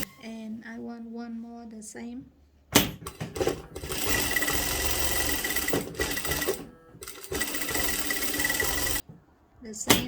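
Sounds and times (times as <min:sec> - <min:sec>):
sewing machine stitching: 0:02.8 - 0:09.0.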